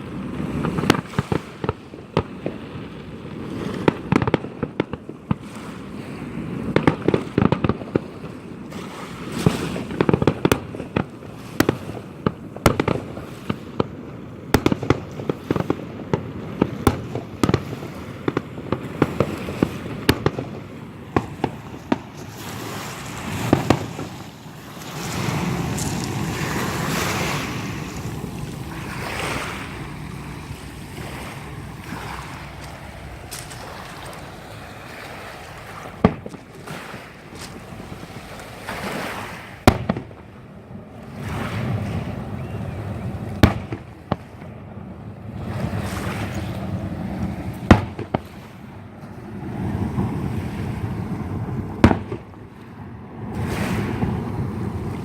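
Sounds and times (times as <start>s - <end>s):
firework bangs: 0.0s - 52.5s, 53.2s - 55.0s
low rumble: 24.6s - 36.1s.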